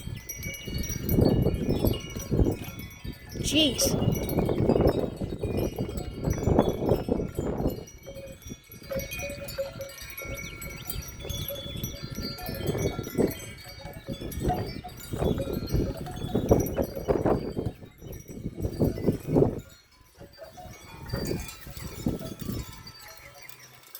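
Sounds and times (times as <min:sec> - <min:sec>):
wind buffeting microphone: 0:00.0 - 0:23.4
metal wind chimes ringing: 0:00.0 - 0:23.9.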